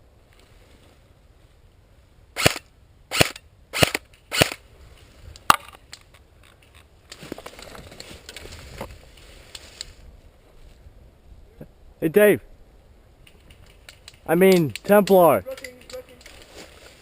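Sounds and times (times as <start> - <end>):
rustling movement: 4.6 - 11.0, 13.1 - 17.0.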